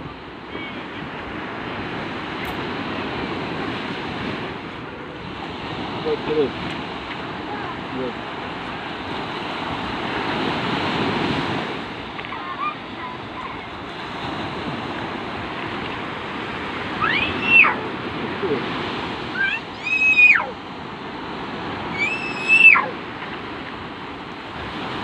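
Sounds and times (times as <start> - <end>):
sea waves breaking: 0.0 - 25.0
wind: 0.0 - 25.0
high voice calling out: 17.0 - 17.9, 19.3 - 20.6.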